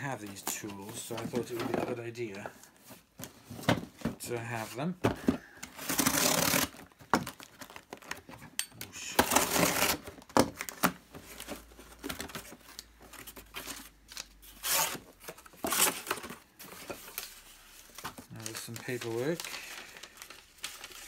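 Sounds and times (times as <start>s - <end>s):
packaging tearing and crinkling: 5.7s - 8.2s, 9.0s - 21.0s.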